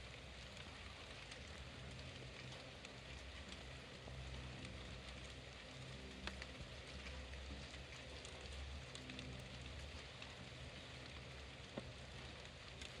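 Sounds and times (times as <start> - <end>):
rain pattering: 0.0 - 13.0.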